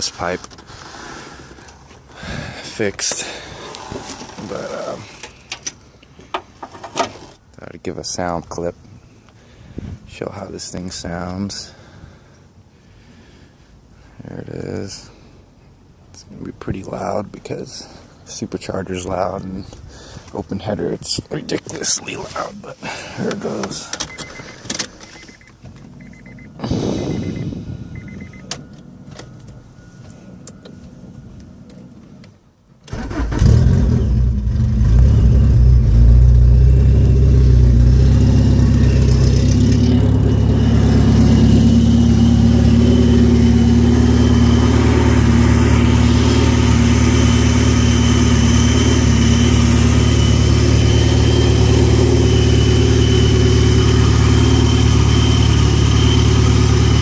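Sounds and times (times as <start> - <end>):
supercharger whine: 25.8 - 32.3, 32.9 - 57.0
loud engine idling: 37.3 - 57.0.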